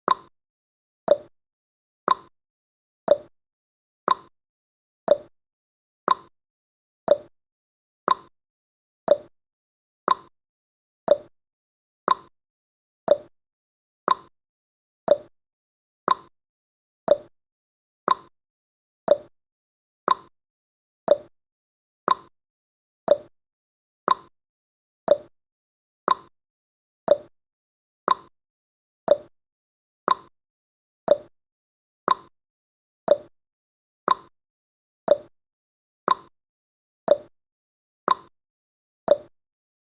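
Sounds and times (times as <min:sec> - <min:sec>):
timer ticking: 0:00.1 - 0:00.3, 0:01.1 - 0:01.3, 0:02.1 - 0:02.3, 0:03.1 - 0:03.3, 0:04.1 - 0:04.3, 0:05.1 - 0:05.3, 0:06.1 - 0:06.3, 0:07.1 - 0:07.3, 0:08.1 - 0:08.3, 0:09.1 - 0:09.3, 0:10.1 - 0:10.3, 0:11.1 - 0:11.3, 0:13.1 - 0:13.3, 0:14.1 - 0:14.3, 0:15.1 - 0:15.3, 0:16.1 - 0:16.3, 0:17.1 - 0:17.3, 0:18.1 - 0:18.3, 0:19.1 - 0:19.3, 0:20.1 - 0:20.3, 0:21.1 - 0:21.3, 0:23.1 - 0:23.3, 0:25.1 - 0:25.3, 0:27.1 - 0:27.3, 0:29.1 - 0:29.3, 0:31.1 - 0:31.3, 0:33.1 - 0:33.3, 0:34.1 - 0:34.3, 0:35.1 - 0:35.3, 0:36.1 - 0:36.3, 0:37.1 - 0:37.3, 0:39.1 - 0:39.3.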